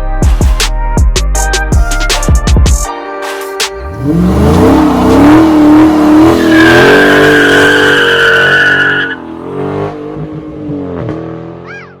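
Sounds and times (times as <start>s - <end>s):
car engine revving: 3.8s - 11.7s
tyre squeal: 6.2s - 9.2s.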